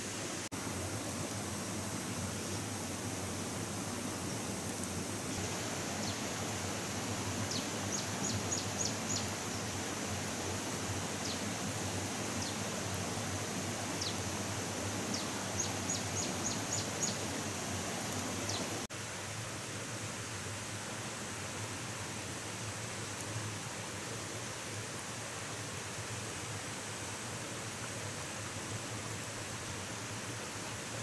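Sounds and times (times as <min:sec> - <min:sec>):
outdoor hiss: 0:00.0 - 0:31.0.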